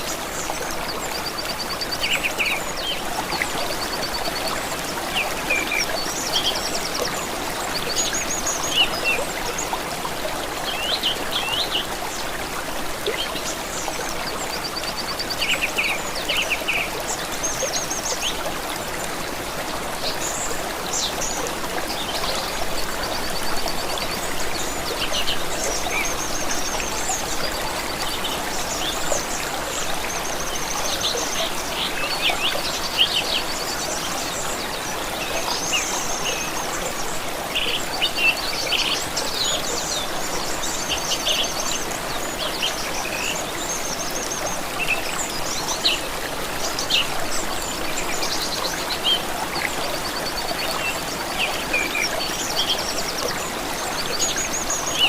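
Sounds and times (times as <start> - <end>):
small stream rushing: 0.0 - 55.0.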